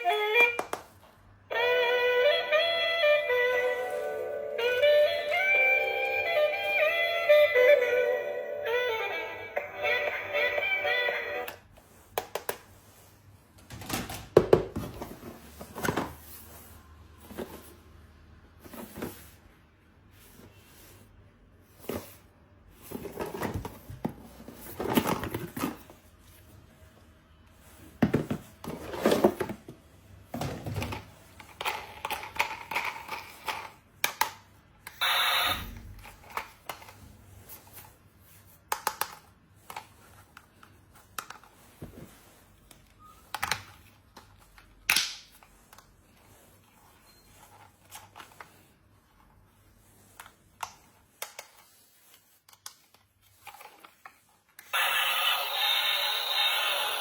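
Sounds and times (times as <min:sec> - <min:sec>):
plastic toy parts clicking and rustling: 0:30.9 - 0:35.0.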